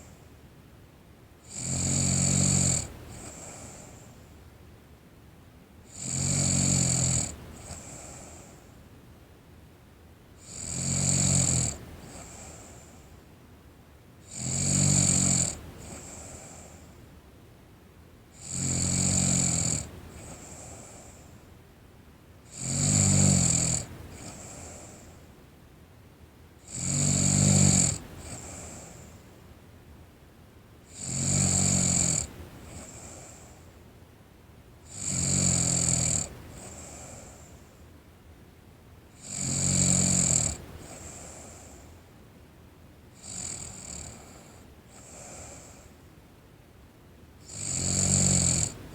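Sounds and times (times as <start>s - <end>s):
girl snoring: 14.3s - 16.7s, 22.5s - 25.1s, 26.7s - 29.0s, 30.9s - 33.4s, 34.9s - 37.4s, 39.2s - 41.7s, 43.2s - 45.8s, 47.5s - 48.8s
faint breath out: 40.7s - 42.1s.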